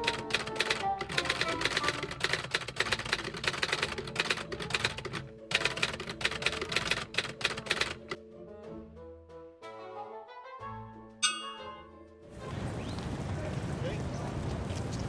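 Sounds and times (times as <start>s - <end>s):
keys clicking: 0.0s - 8.2s
background music: 0.0s - 12.8s.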